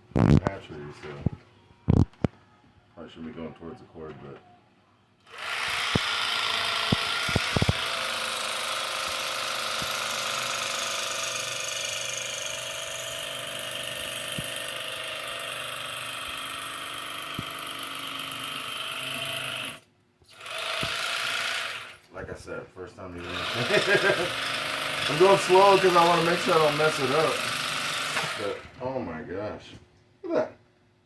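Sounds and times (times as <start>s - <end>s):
electric fillet knife buzzing: 5.2s - 22.1s, 23.2s - 28.8s.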